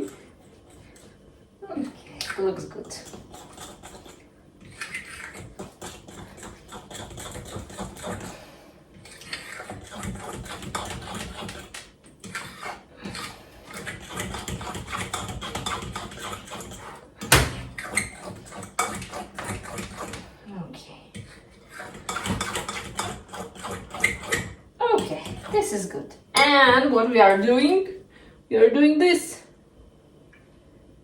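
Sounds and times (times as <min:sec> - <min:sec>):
fork clattering against bowl: 0:21.1 - 0:25.6.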